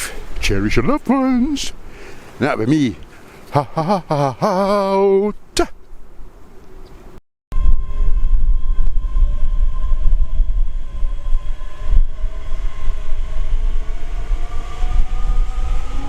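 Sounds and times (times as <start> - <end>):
vehicle rumble: 5.9 - 16.0
motor whine rising in pitch: 7.5 - 16.0.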